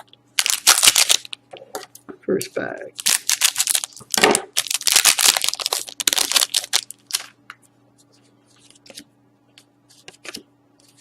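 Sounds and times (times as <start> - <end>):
wrapper crinkling and tearing: 0.4 - 1.4, 3.0 - 7.4.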